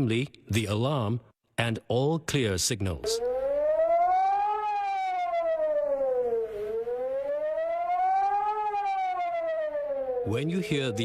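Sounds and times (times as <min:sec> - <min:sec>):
wailing warning siren: 0:03.0 - 0:11.0.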